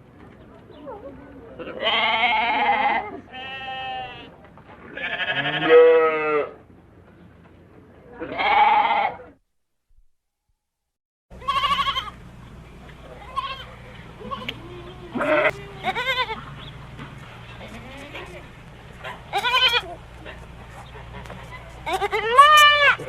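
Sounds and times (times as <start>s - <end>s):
goats bleating: 1.6s - 4.3s, 4.9s - 6.6s, 8.2s - 9.4s, 11.4s - 12.2s, 13.2s - 16.6s, 17.5s - 18.6s, 19.3s - 20.4s, 21.1s - 23.0s
low steady hum: 11.3s - 23.0s.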